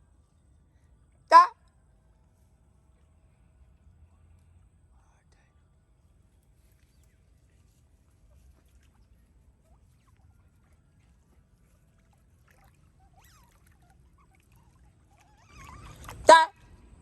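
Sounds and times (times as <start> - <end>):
otters squeaking and chirping: 12.9 - 16.3
otter squealing call: 13.0 - 16.5.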